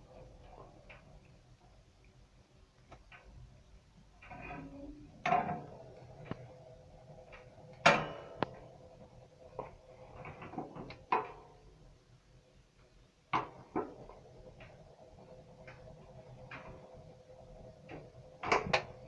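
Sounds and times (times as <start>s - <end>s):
faint steady hum: 0.0s - 19.0s
stove knocks and clicks: 17.9s - 19.0s.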